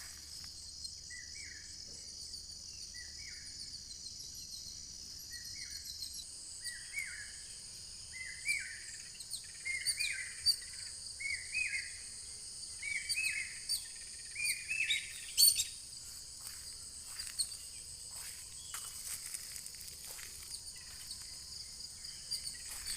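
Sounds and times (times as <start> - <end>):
crickets chirping: 0.0 - 22.9
bird chirping: 8.1 - 22.9.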